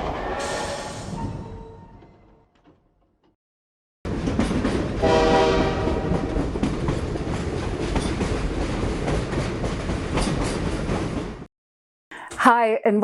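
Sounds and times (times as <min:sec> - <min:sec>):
train rumbling on rails: 0:04.1 - 0:11.5
train horn blast: 0:05.0 - 0:06.3.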